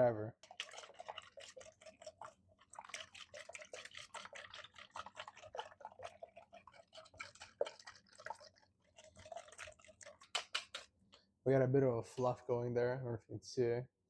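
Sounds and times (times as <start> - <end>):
whisk beating egg whites: 0.4 - 10.9.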